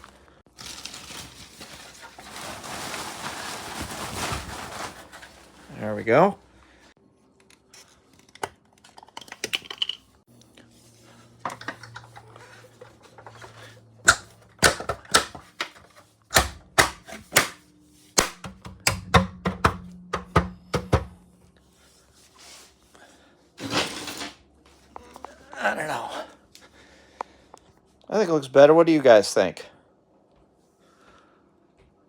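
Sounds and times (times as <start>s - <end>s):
sharp knocks and snaps of plastic: 14.1s - 17.6s, 18.2s - 21.2s.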